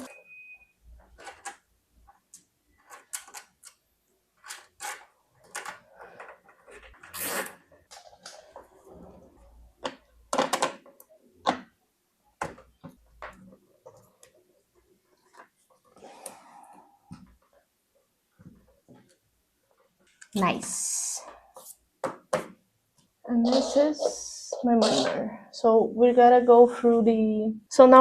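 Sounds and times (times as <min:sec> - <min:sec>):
cables rattling and rustling: 0:04.4 - 0:11.0.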